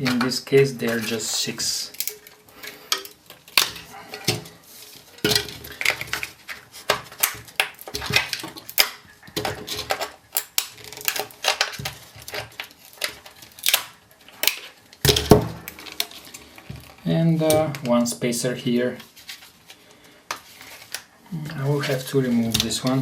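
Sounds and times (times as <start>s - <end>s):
plastic battery case clicks and scraping: 0.0s - 17.9s.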